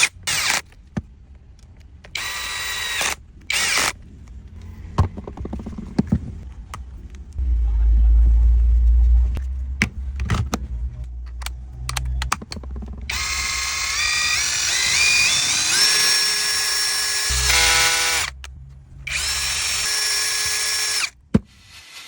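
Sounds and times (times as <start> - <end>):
cordless drill motor whining: 0.0 - 0.6, 2.1 - 3.9, 13.1 - 18.4, 19.1 - 21.2.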